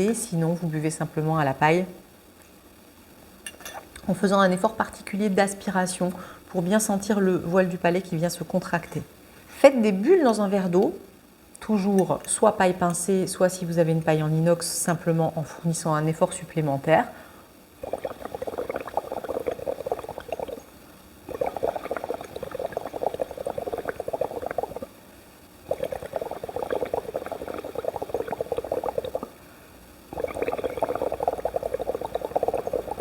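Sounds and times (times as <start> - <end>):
bubbling through a straw in water: 17.8 - 25.0, 25.6 - 29.4, 30.0 - 33.0.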